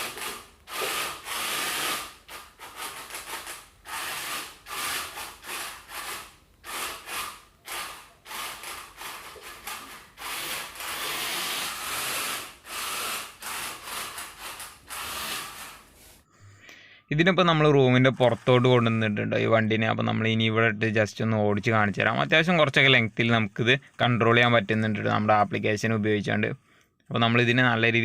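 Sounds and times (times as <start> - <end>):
toy car motors whirring: 0.0 - 16.2, 18.0 - 19.1.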